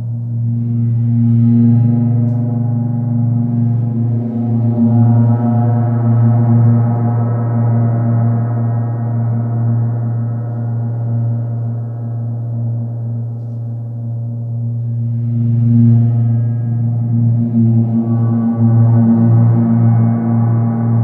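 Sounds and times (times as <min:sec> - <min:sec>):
gong humming under friction mallet: 0:00.0 - 0:21.0.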